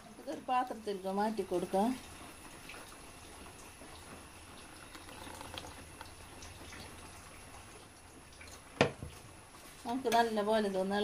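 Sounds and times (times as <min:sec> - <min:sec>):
soft wet batter pouring: 0:01.9 - 0:09.9.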